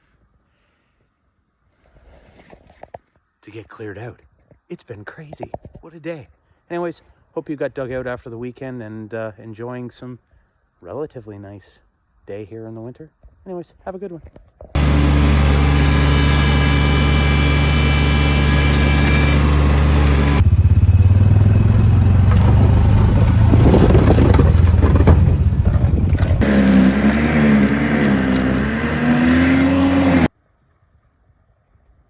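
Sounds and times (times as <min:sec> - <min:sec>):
snow-clearing machine engines: 0:14.8 - 0:30.3.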